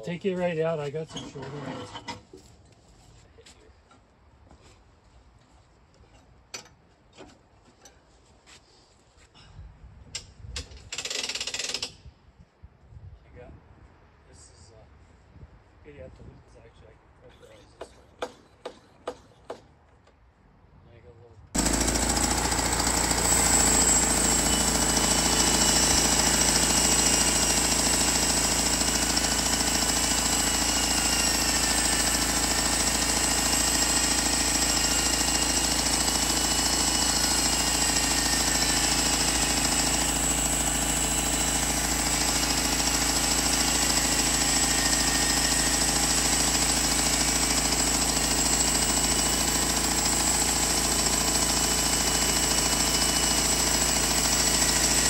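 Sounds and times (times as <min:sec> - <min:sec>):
sawmill engine chattering: 0:21.6 - 0:55.0.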